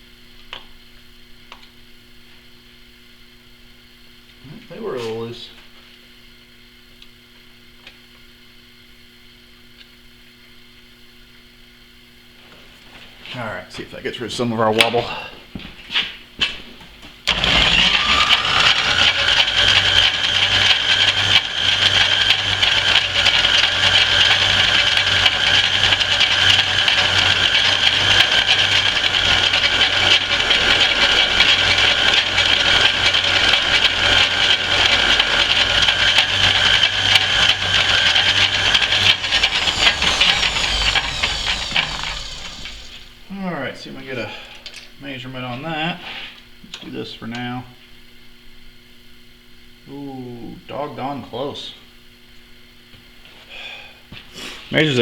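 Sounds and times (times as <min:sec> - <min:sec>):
metal lathe whining and humming: 0:17.3 - 0:43.3.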